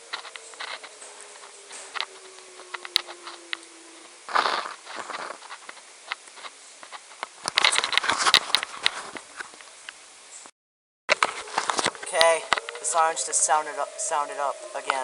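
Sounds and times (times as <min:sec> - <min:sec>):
distant warning siren winding down: 0:00.0 - 0:05.8, 0:11.1 - 0:15.0
rustling clatter: 0:00.0 - 0:09.7, 0:11.1 - 0:15.0
raindrops tapping: 0:00.0 - 0:10.0.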